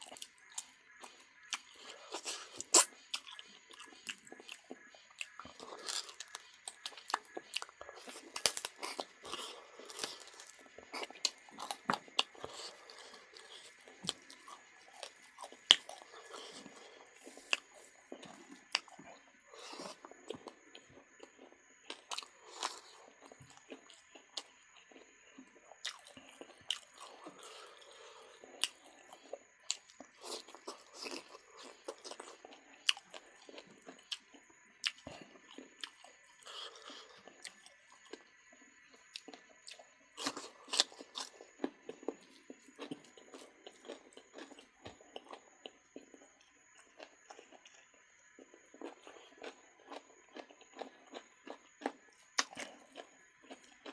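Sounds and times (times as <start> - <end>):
chewing: 0.0 - 53.9
crunching bites: 0.1 - 19.0, 48.3 - 53.9.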